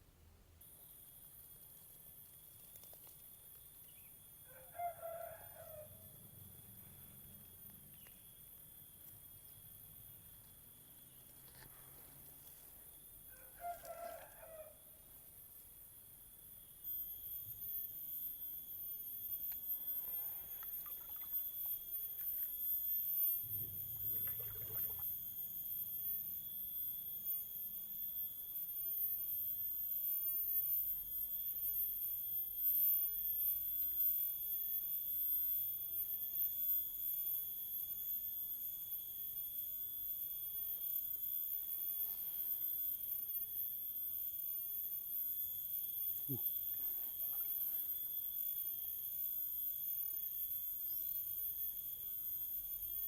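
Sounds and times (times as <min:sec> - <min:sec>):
rooster crowing in the distance: 0:04.4 - 0:06.4, 0:13.2 - 0:15.1.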